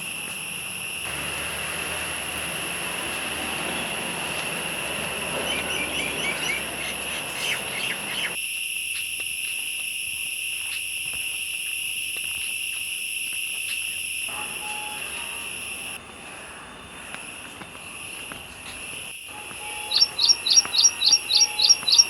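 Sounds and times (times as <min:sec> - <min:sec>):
insects shrilling: 0:00.9 - 0:09.2, 0:18.8 - 0:22.0
background rush: 0:01.1 - 0:08.4
quick chirps: 0:02.2 - 0:08.4, 0:19.6 - 0:22.0.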